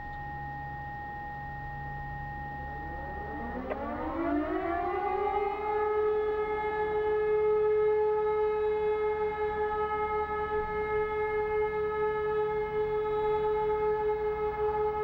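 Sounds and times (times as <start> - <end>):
steady high tone: 0.0 - 6.0
siren wail rising: 1.8 - 15.0.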